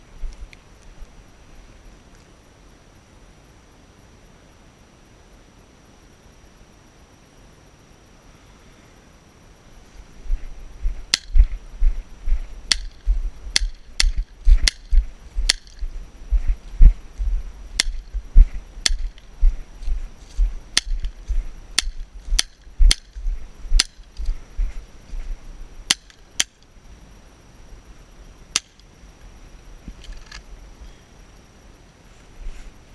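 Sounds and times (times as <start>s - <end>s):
low microphone rumble: 10.0s - 25.9s.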